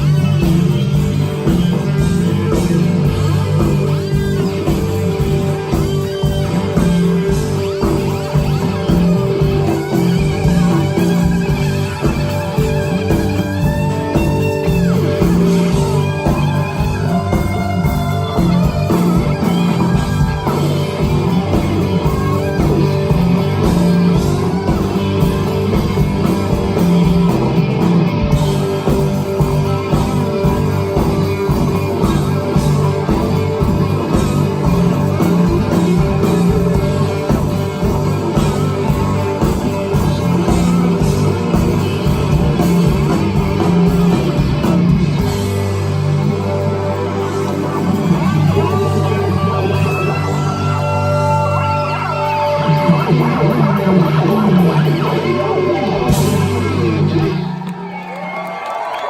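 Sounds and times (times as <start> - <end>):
drum beat: 0.0 - 45.7
bass: 0.0 - 59.0
electric guitar: 0.0 - 59.0.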